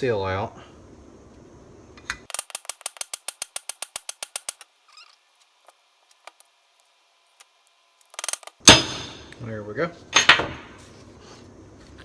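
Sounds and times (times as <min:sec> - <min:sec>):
hammer strikes on metal: 0:08.6 - 0:09.4.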